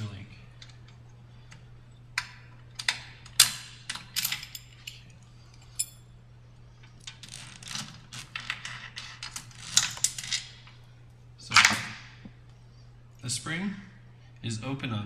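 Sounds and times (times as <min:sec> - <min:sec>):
faint low hum: 0:00.0 - 0:15.0
metallic chain clicks and rattles: 0:03.3 - 0:06.0.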